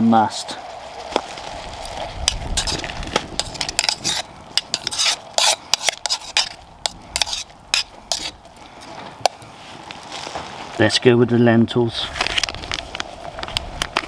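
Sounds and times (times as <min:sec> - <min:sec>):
faint simmering hiss: 0:00.0 - 0:14.0
metal spoon scraping steel cup: 0:02.6 - 0:02.8, 0:03.4 - 0:08.4.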